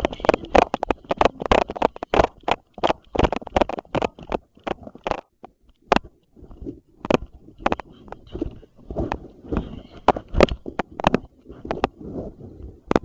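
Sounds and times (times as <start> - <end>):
footsteps crunching on dry ground: 6.5 - 12.0.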